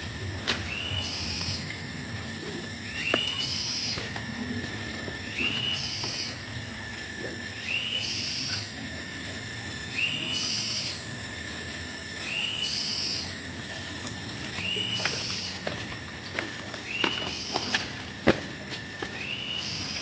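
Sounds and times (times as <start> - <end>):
whistled animal call: 0.7 - 1.7, 2.4 - 4.1, 5.2 - 6.4, 7.5 - 8.8, 9.8 - 11.1, 12.2 - 13.4, 14.6 - 15.6, 16.8 - 17.9, 19.2 - 20.0.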